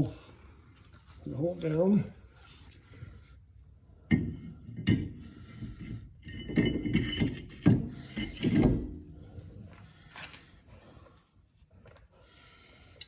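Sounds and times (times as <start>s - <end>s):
metal knocking and clinking: 4.1s - 9.0s.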